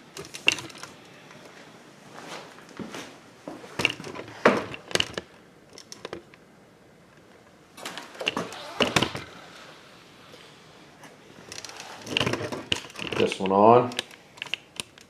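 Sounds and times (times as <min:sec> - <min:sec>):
parts knocking and scraping: 0:00.0 - 0:01.0, 0:03.8 - 0:06.3, 0:08.0 - 0:09.4, 0:11.4 - 0:15.0.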